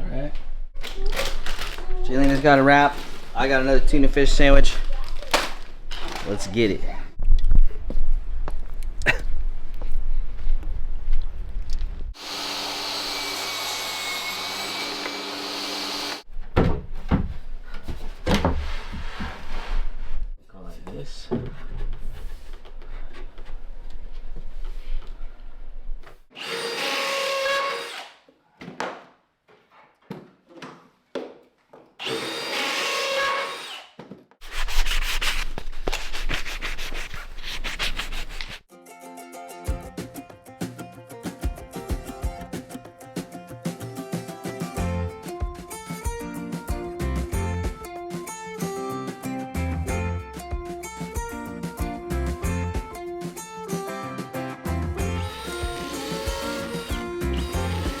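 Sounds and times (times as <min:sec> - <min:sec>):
power tool running: 0:12.2 - 0:16.2, 0:26.4 - 0:28.1, 0:32.0 - 0:33.9, 0:55.2 - 0:58.0
music: 0:38.7 - 0:58.0
rhythmic sanding on wood: 0:55.0 - 0:58.0
electric machine whining: 0:55.2 - 0:58.0.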